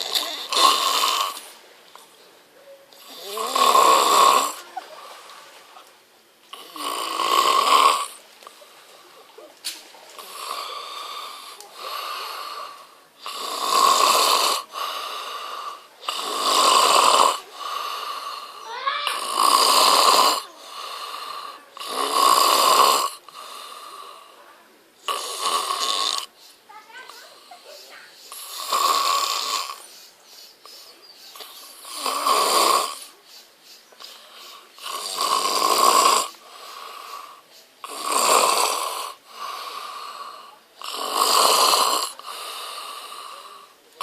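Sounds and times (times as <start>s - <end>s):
snoring: 0.0s - 1.5s, 3.0s - 4.7s, 6.5s - 8.2s, 10.2s - 24.4s, 25.0s - 26.3s, 28.3s - 29.9s, 31.3s - 33.2s, 34.0s - 43.8s
quiet breaths: 0.0s - 44.0s.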